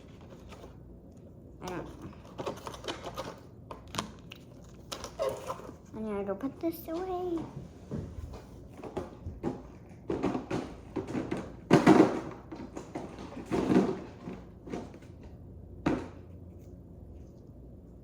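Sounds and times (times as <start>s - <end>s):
container knocking and scraping: 8.8s - 15.0s.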